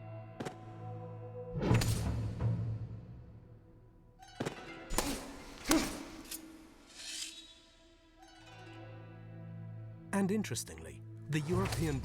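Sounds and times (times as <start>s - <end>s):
dramatic background music: 0.0s - 12.0s.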